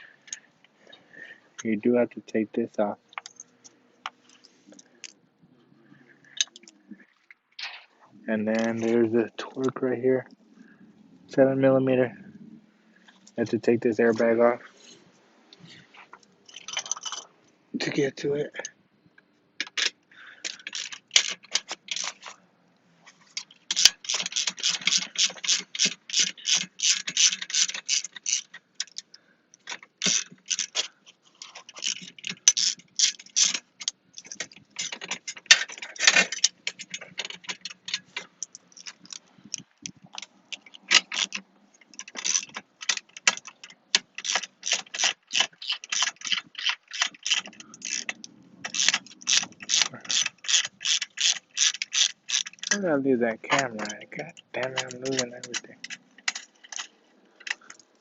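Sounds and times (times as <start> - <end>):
ratchet wrench clicking: 23.7 - 37.8, 42.0 - 52.8.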